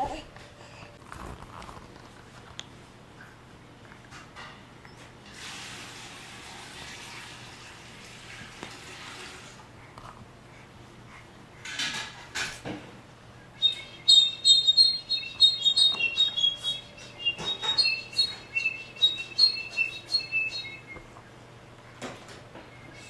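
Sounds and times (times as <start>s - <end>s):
short harsh bird sounds: 13.6s - 20.9s
pet bird chirping and whistling: 13.6s - 21.0s.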